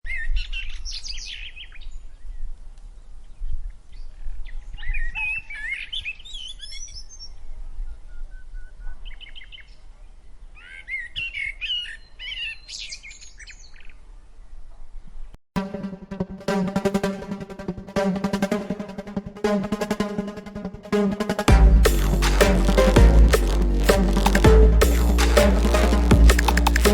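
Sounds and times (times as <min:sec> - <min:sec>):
steady low rumble: 0:20.9 - 0:26.9.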